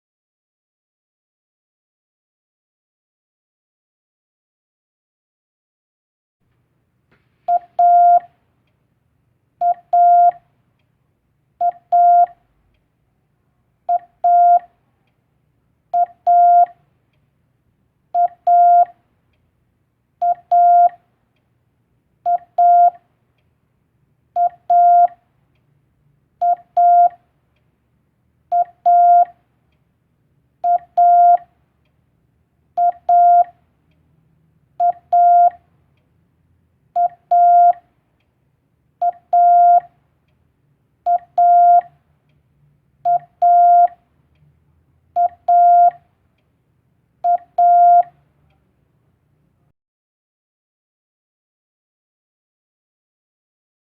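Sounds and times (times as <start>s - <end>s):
morse code tone: 7.5s - 8.3s, 9.6s - 10.4s, 11.6s - 12.4s, 13.9s - 14.7s, 16.0s - 16.8s, 18.2s - 18.9s, 20.2s - 21.0s, 22.3s - 23.0s, 24.4s - 25.2s, 26.4s - 27.2s, 28.6s - 29.3s, 30.7s - 31.4s, 32.8s - 33.5s, 34.8s - 35.6s, 37.0s - 37.8s, 39.0s - 39.9s, 41.1s - 41.9s, 43.1s - 44.0s, 45.2s - 46.0s, 47.3s - 48.1s.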